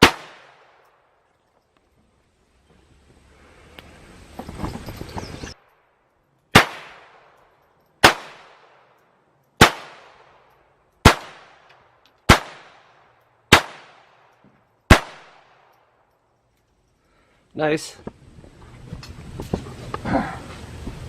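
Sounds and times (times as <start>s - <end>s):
handgun shots with echo: 0.0s - 0.9s, 6.5s - 7.3s, 8.0s - 8.9s, 9.6s - 12.8s, 13.5s - 14.3s, 14.9s - 15.7s.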